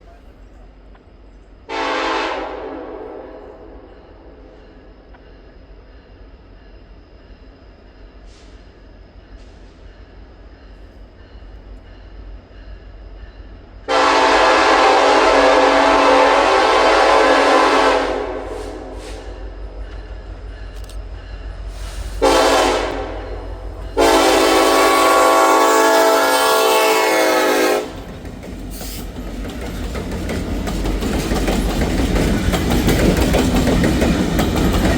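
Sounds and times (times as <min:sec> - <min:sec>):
locomotive air horn: 0:01.7 - 0:04.3, 0:13.9 - 0:19.5, 0:22.2 - 0:28.0
train wheels clattering over rails: 0:26.9 - 0:34.9.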